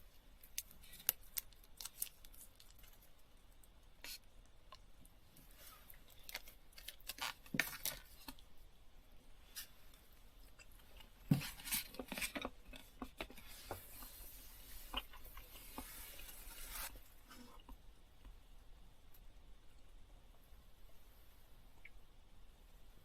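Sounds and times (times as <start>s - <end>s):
steady hiss: 13.3s - 23.0s.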